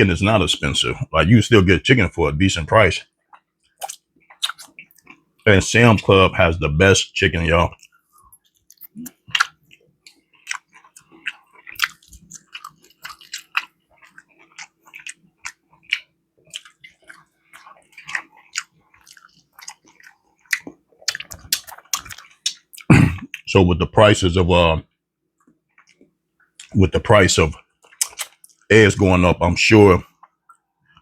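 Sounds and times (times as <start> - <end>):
faint steady hum: 0.0 - 31.0
person chewing and smacking food: 3.2 - 6.2, 7.7 - 23.5, 25.4 - 26.8, 27.6 - 28.7, 30.0 - 31.0.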